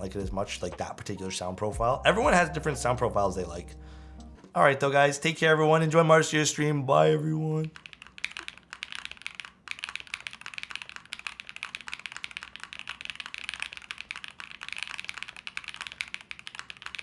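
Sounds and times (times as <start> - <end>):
mechanical keyboard typing: 7.7 - 17.0.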